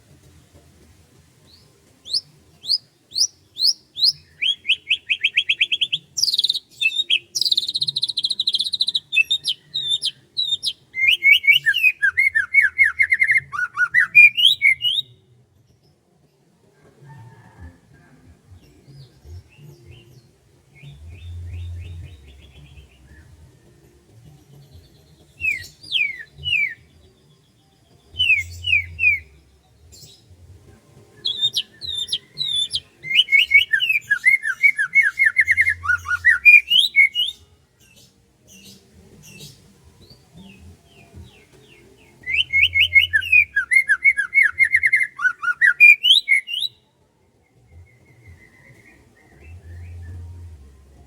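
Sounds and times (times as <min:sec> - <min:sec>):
birds singing: 0:01.5 - 0:15.3, 0:24.6 - 0:51.0.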